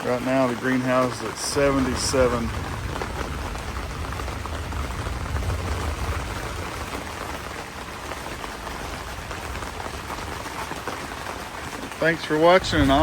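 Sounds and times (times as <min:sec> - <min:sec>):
rain pattering on greenhouse: 0:00.0 - 0:13.0
low rumble: 0:01.4 - 0:10.6, 0:12.6 - 0:13.0.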